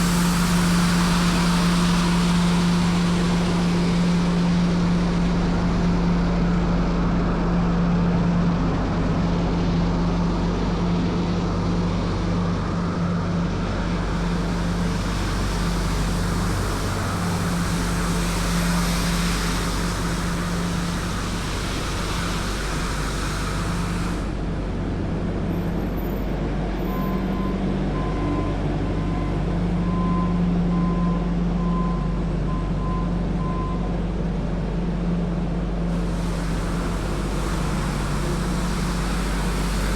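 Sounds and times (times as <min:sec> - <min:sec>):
broad rushing hiss: 0:00.0 - 0:08.4, 0:11.6 - 0:24.6, 0:35.9 - 0:39.9
street sweeper engine drone: 0:00.0 - 0:39.9.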